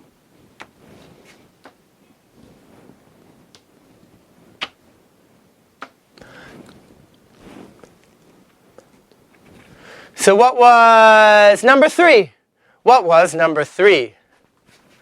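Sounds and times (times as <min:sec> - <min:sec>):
soft rustling: 0:00.3 - 0:05.5, 0:06.2 - 0:10.1, 0:14.2 - 0:15.0.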